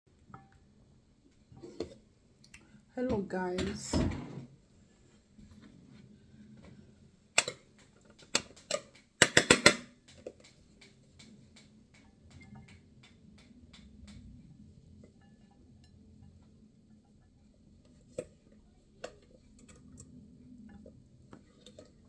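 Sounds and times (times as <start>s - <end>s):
cutlery and dishes clinking: 8.2s - 10.3s.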